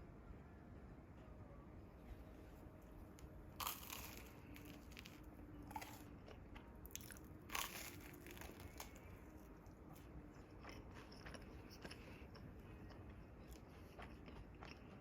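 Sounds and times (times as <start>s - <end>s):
crunchy bites into crisp food: 3.6s - 6.1s, 6.8s - 9.1s
chewing crackles: 3.6s - 15.0s.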